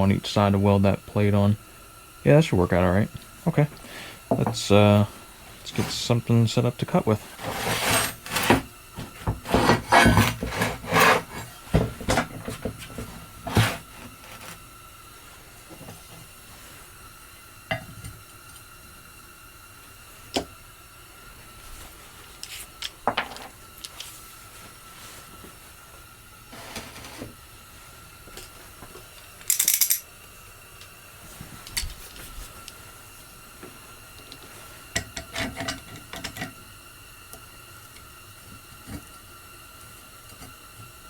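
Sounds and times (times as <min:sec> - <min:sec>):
metal tools clanking: 0:09.4 - 0:14.6.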